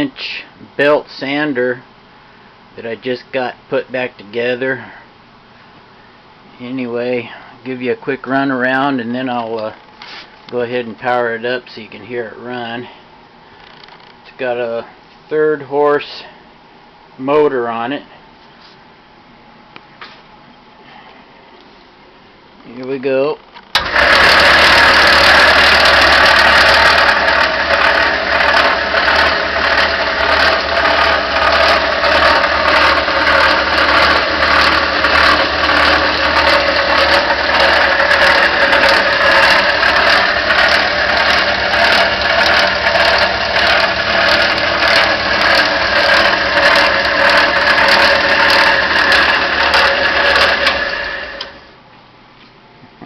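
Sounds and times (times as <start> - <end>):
belt sander running: 23.8 - 51.6.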